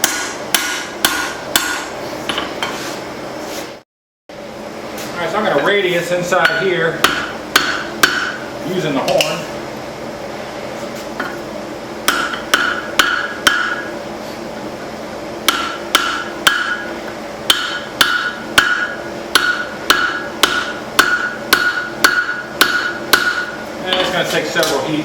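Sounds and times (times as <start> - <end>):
hammer striking steel on anvil: 0.0 - 2.7, 6.4 - 8.5, 12.0 - 13.9, 15.4 - 24.8.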